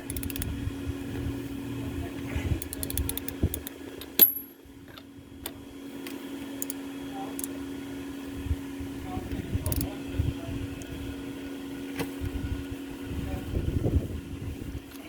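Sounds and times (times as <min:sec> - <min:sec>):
socket ratchet clicking: 0:00.0 - 0:00.5, 0:02.6 - 0:04.5, 0:06.6 - 0:06.8, 0:09.6 - 0:09.9
steady low hum: 0:00.0 - 0:15.0
sharp metal click and ring: 0:04.2 - 0:04.6.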